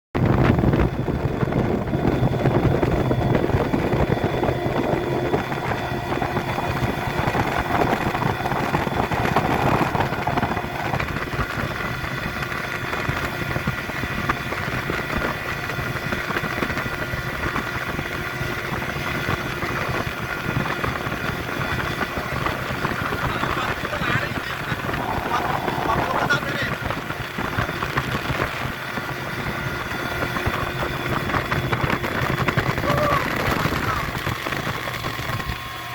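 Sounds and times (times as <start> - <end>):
outboard motor running: 0.2 - 35.9.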